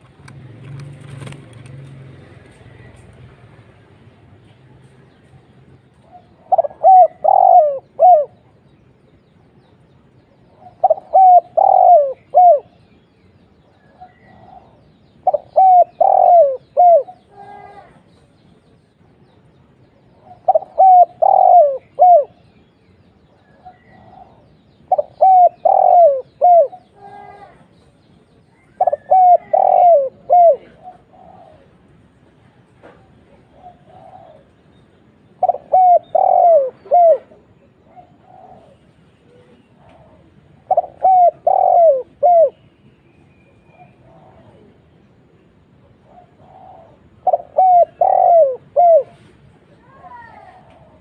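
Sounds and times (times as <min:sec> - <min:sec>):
dove cooing: 0:06.0 - 0:08.5, 0:10.5 - 0:12.8, 0:13.9 - 0:18.0, 0:20.1 - 0:22.4, 0:23.6 - 0:27.6, 0:28.6 - 0:31.9, 0:32.9 - 0:42.6, 0:43.7 - 0:45.1, 0:45.8 - 0:49.4.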